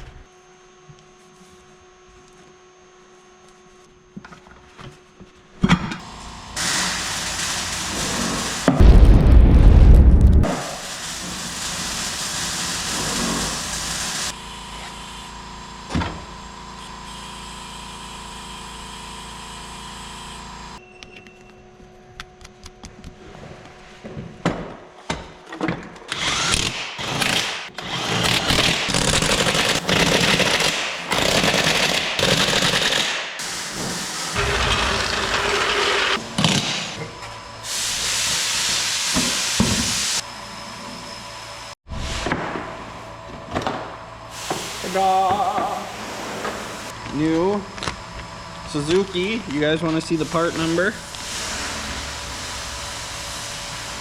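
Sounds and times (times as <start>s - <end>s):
power tool running: 11.0s - 16.0s, 26.1s - 36.6s.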